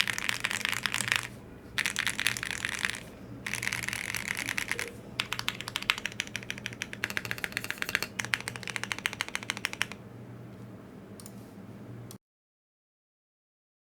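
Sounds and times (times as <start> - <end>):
mechanical keyboard typing: 0.0 - 10.0.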